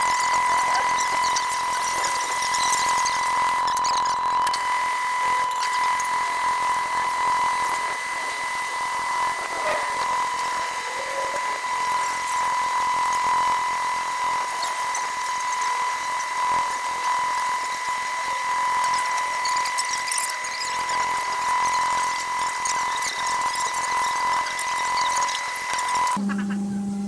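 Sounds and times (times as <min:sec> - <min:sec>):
power tool motor whining: 0:00.0 - 0:27.0.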